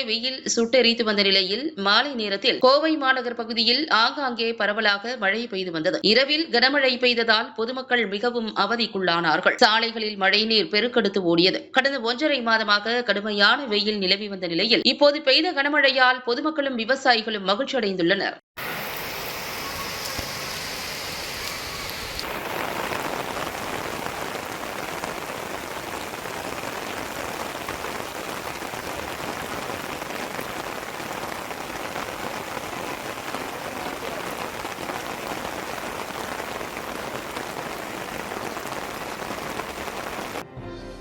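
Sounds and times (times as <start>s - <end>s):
heavy rain falling: 18.6s - 40.4s.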